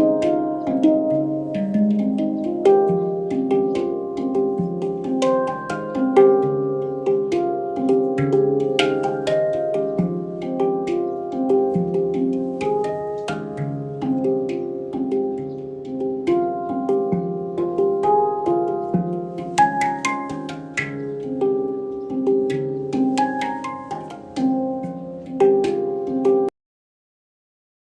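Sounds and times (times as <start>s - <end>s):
handpan melody: 0.0s - 26.5s.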